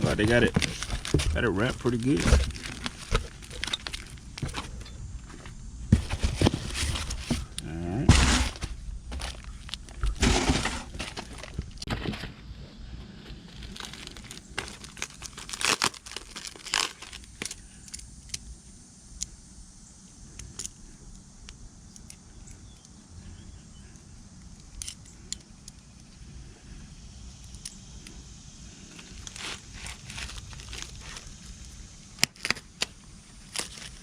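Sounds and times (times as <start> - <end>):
packaging wrap crinkling and tearing: 0.0 - 4.8, 8.2 - 12.0, 13.5 - 17.6, 29.0 - 34.0.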